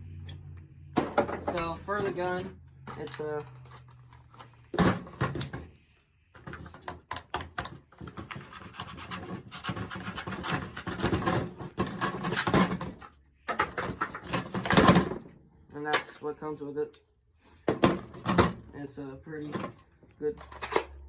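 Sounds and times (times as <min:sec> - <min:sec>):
packaging scraping and rustling: 0:07.8 - 0:14.9.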